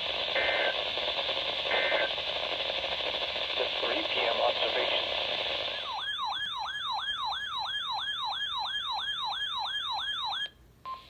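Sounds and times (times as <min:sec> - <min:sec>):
yelping siren alarm: 0:05.8 - 0:11.0.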